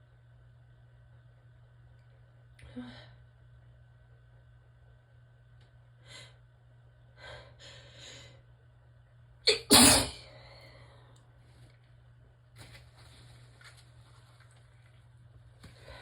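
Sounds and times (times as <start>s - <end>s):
person sneezing: 9.5s - 10.2s.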